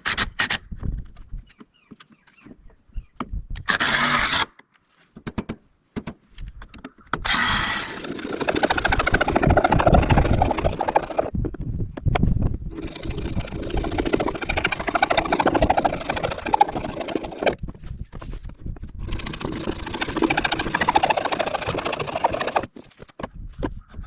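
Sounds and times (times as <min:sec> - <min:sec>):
power driver rattling: 0:07.2 - 0:11.3.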